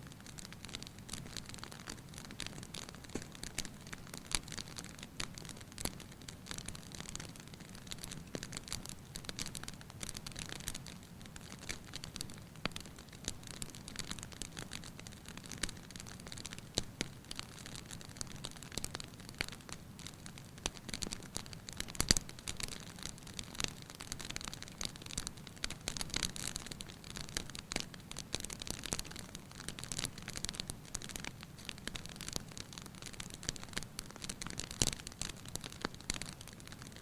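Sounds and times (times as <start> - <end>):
wood fire crackling: 0.0 - 37.0.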